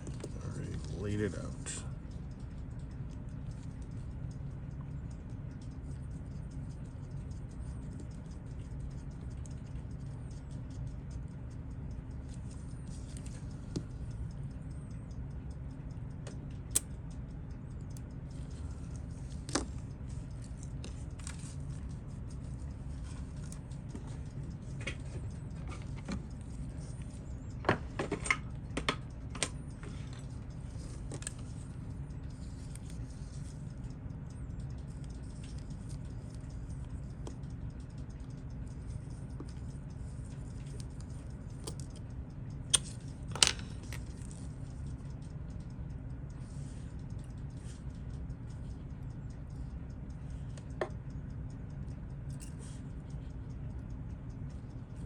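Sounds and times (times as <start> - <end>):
steady low hum: 0.0 - 55.0
small metallic tool clicks: 16.7 - 18.0, 42.6 - 44.4, 51.9 - 52.7.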